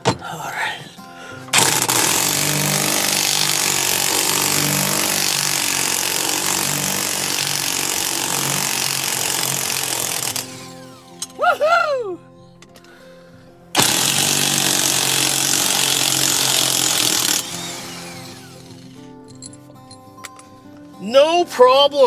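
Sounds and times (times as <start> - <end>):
impact wrench hammering: 1.6 - 11.4, 13.8 - 19.5.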